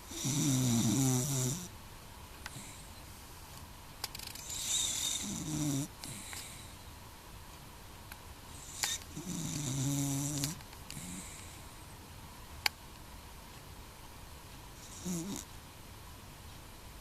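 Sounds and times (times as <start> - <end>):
dog snoring: 0.0 - 1.7, 4.4 - 6.7, 8.5 - 11.7, 14.8 - 15.5.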